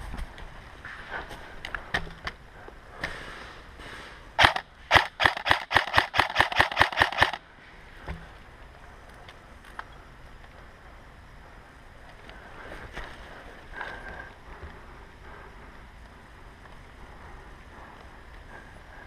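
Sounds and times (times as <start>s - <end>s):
airsoft guns firing: 4.4s - 7.4s.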